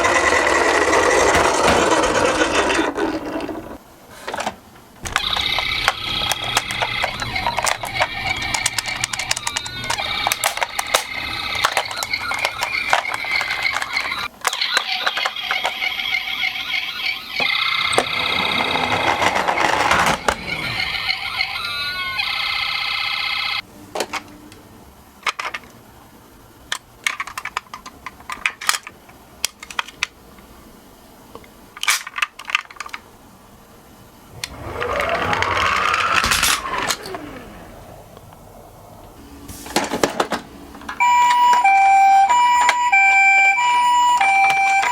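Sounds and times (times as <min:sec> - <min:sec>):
toy cars clicking: 0:00.0 - 0:03.8, 0:05.1 - 0:22.0, 0:26.7 - 0:30.2, 0:34.4 - 0:37.4
toy electronic siren: 0:05.1 - 0:23.6, 0:41.0 - 0:44.9.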